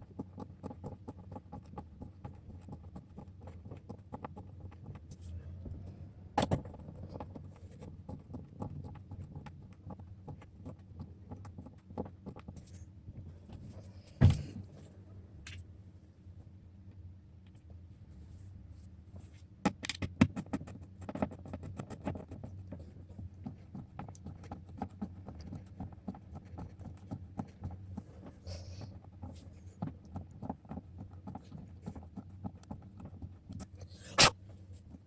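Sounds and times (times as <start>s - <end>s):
steady low hum: 0.0s - 35.0s.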